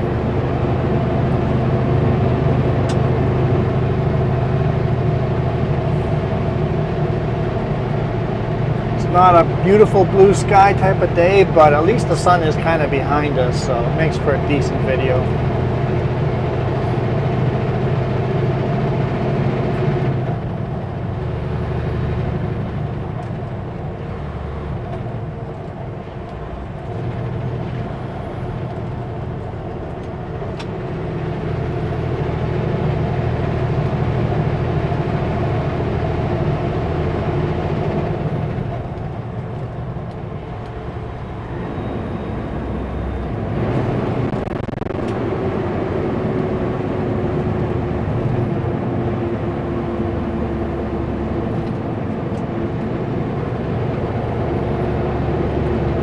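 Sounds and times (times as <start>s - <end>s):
truck diesel engine running: 0.0s - 56.0s.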